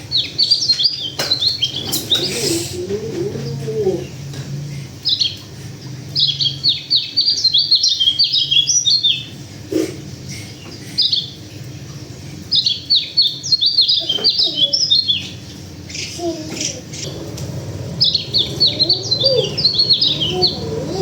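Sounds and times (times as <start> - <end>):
bird singing high twittering notes: 18.0 - 21.0.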